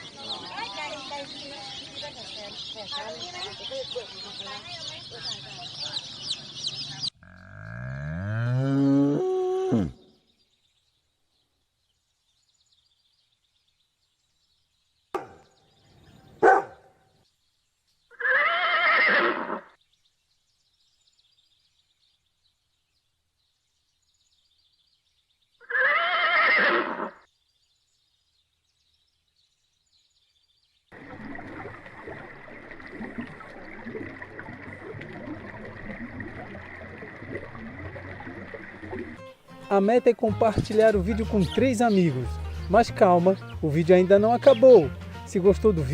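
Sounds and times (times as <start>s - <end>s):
animal calls: 25.6s - 27.2s.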